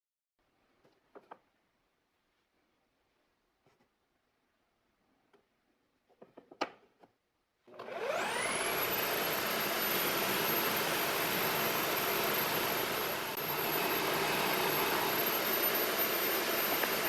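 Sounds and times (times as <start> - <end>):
electric motor whining: 7.8 - 17.0.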